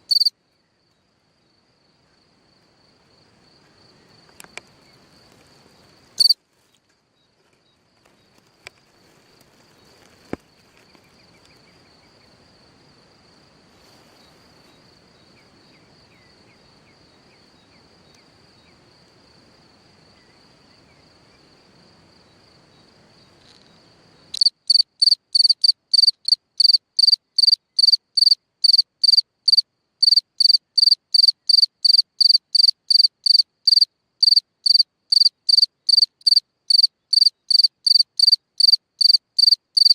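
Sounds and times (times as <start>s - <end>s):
cricket trilling: 0.0s - 0.3s, 0.9s - 6.4s, 7.7s - 39.9s
loud cricket chirps: 0.0s - 6.8s, 7.6s - 39.9s.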